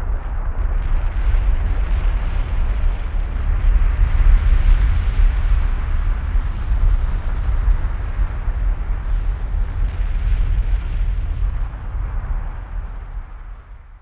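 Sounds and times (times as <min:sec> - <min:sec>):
deep rumble of lava eruption: 0:00.0 - 0:14.0.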